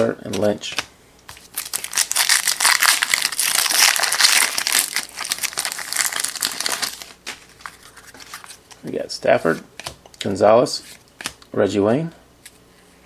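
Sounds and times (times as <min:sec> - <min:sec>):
foil wrapper crinkling: 0:01.4 - 0:08.6.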